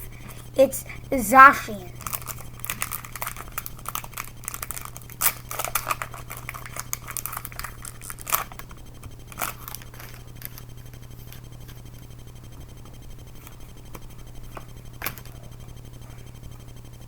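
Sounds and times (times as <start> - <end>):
foil ripping: 2.0 - 8.6
foil pack crinkling: 2.0 - 8.7, 9.3 - 11.4.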